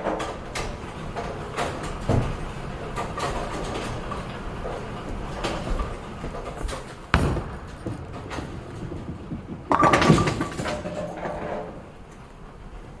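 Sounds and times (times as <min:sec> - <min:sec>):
bowling ball crashing into pins: 0:05.2 - 0:12.2.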